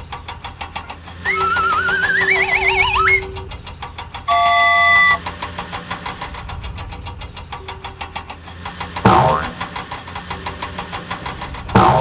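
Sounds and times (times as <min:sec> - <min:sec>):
cartoon engine chugging: 0:10.3 - 0:12.0.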